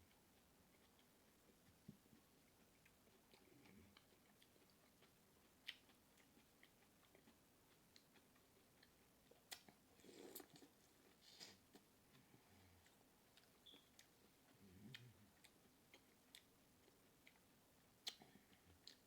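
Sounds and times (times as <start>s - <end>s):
chewing and lip-smacking: 0.0s - 19.0s
wet mouth clicks: 18.0s - 18.2s.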